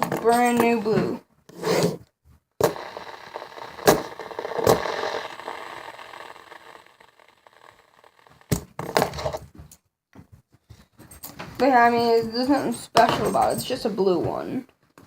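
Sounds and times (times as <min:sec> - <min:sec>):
fidget spinner bearing whirring: 0:02.6 - 0:08.6.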